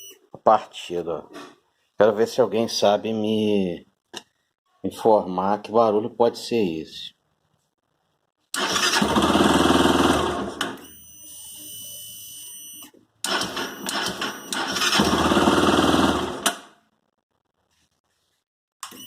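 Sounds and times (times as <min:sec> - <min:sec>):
motorcycle engine cranking on starter: 0:08.6 - 0:10.8, 0:13.2 - 0:16.7.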